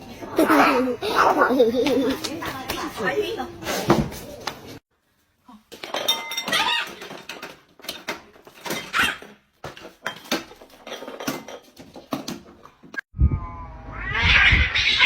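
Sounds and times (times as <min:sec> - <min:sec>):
cats squeaky cries: 0:13.9 - 0:15.0.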